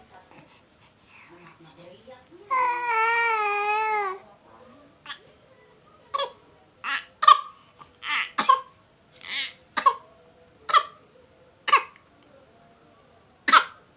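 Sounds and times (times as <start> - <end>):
baby coughing: 6.1 - 7.5, 8.1 - 8.7, 9.3 - 10.0, 10.7 - 11.0, 11.7 - 12.0, 13.5 - 13.8.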